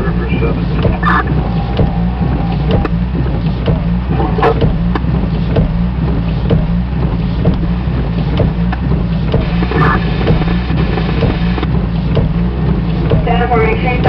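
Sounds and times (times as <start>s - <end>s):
low engine drone: 0.0s - 14.0s.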